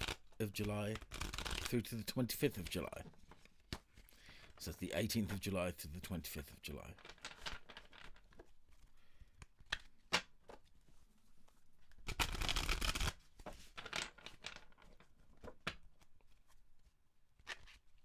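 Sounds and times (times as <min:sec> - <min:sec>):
cards being shuffled: 0:00.0 - 0:04.1, 0:12.1 - 0:13.1.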